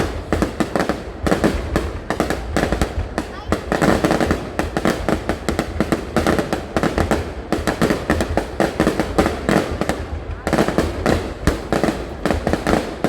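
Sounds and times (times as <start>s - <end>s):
fireworks bangs and cracks: 0.0s - 13.0s.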